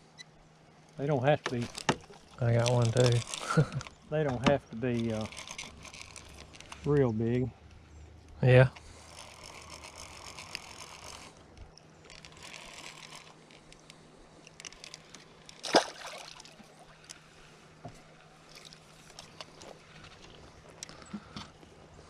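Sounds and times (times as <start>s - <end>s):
creek water running: 15.6s - 20.0s.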